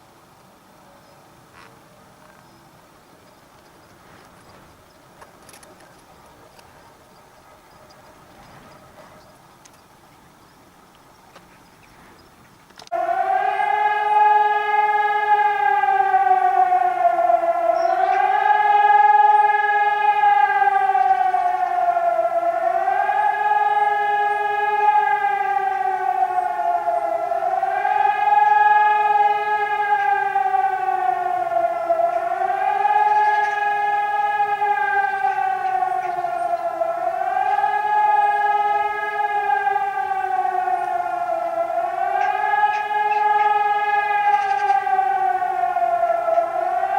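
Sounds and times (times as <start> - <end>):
warning siren wailing: 12.8 - 46.9.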